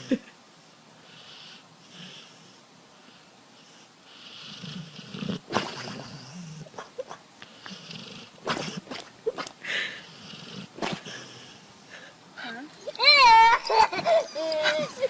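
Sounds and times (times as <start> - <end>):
dog snoring: 1.0 - 6.8, 7.5 - 11.7.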